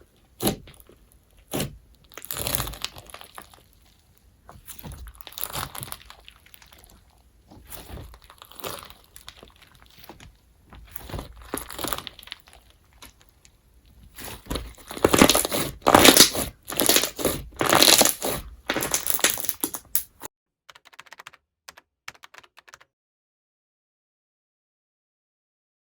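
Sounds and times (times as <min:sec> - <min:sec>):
slime crackling when squeezed: 0:14.2 - 0:20.2.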